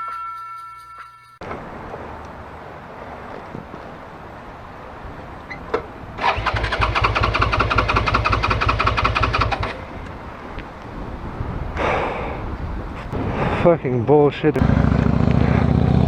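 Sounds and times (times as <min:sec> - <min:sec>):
motorcycle starter cranking: 0:06.2 - 0:09.8.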